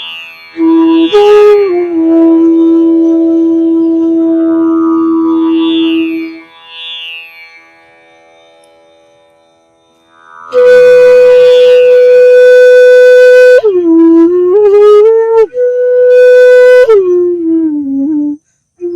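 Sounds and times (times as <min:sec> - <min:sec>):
woodwind melody: 0:00.0 - 0:06.5, 0:10.5 - 0:18.9.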